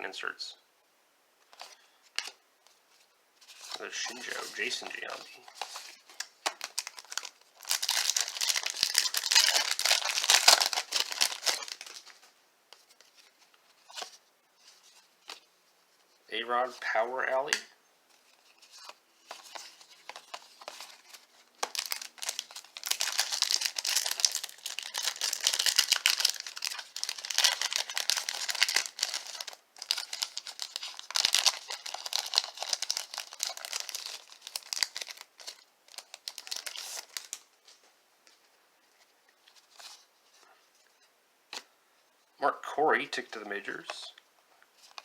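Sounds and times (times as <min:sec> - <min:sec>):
wrapper crinkling and tearing: 0:03.5 - 0:12.3, 0:18.5 - 0:37.5.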